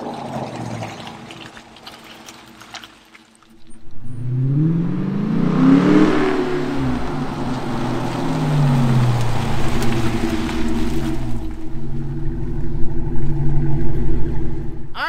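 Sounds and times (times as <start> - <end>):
car exhaust revving: 3.6 - 15.0.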